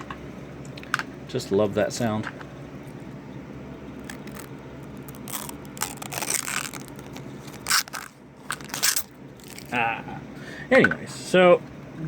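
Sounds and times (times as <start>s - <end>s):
packaging rustling and scraping: 4.0s - 9.8s.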